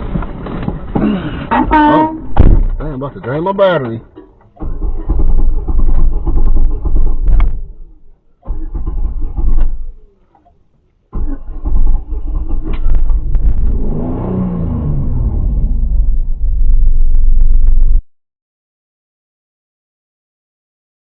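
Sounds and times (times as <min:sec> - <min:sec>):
car engine rumbling: 0:00.0 - 0:18.0
engine note rising and falling: 0:11.2 - 0:18.0.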